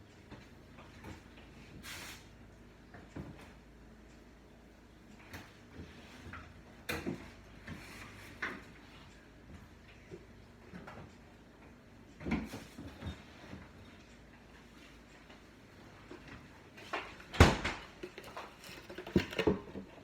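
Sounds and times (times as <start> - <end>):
kitchen containers and utensils clunking: 16.9 - 20.0.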